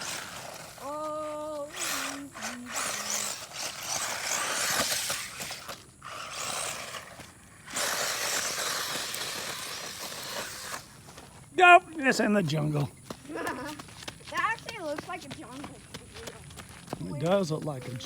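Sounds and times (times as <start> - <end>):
toy car electric motor whining: 0.0 - 11.5.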